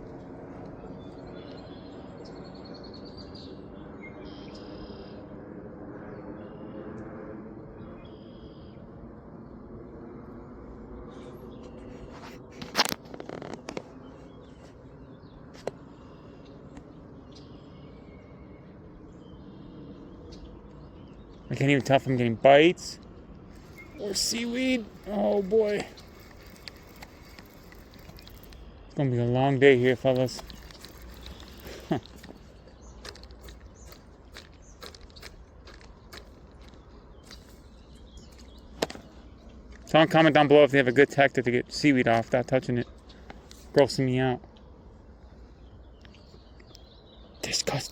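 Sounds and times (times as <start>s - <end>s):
low outdoor background: 0.0s - 47.9s
rustling and scraping: 11.8s - 14.8s, 23.5s - 28.6s, 29.8s - 39.2s.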